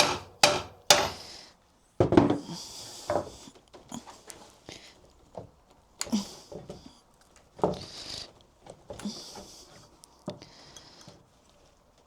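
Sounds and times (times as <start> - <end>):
hammer striking wooden boards: 0.0 - 1.3.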